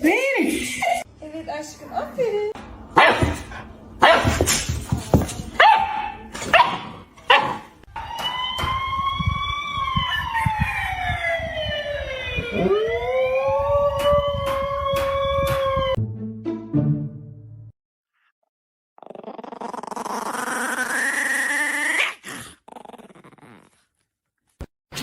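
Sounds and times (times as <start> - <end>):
dog barking: 3.0 - 3.4, 4.0 - 4.5, 5.6 - 7.7.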